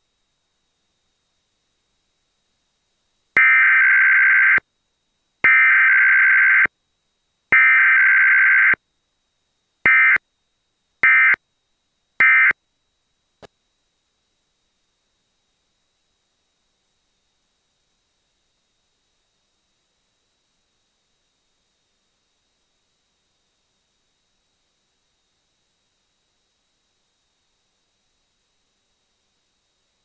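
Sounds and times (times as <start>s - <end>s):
buzzy digital data bursts: 3.4s - 4.6s, 5.5s - 6.7s, 7.6s - 8.8s, 9.9s - 10.2s, 11.0s - 11.4s, 12.2s - 12.5s.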